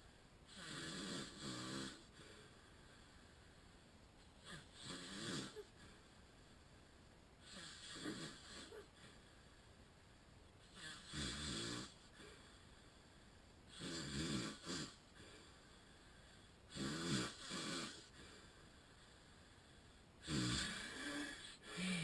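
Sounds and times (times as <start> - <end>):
man snoring: 0.5 - 2.5, 4.4 - 5.8, 7.4 - 8.9, 10.7 - 12.4, 13.7 - 15.4, 16.7 - 18.4, 20.2 - 22.0.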